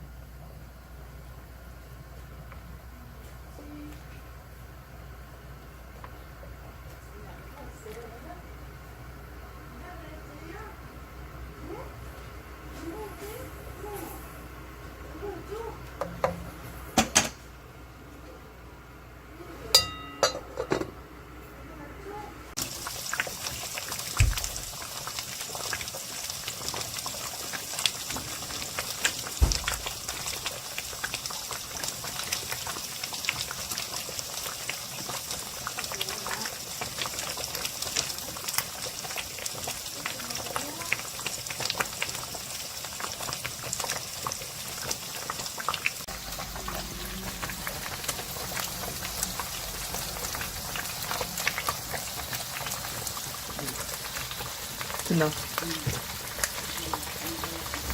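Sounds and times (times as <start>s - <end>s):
metal clinks against pot: 19.7s - 20.9s
porridge bubbling and popping: 22.6s - 57.9s.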